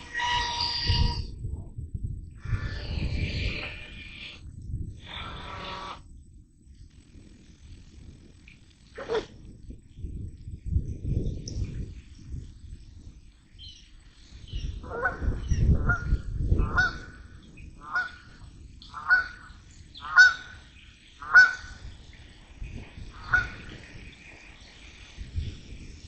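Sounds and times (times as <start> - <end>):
bird honking: 0.0 - 1.2, 16.7 - 17.0, 17.8 - 20.6, 21.2 - 21.8, 23.2 - 23.7
low rumble: 0.9 - 20.0.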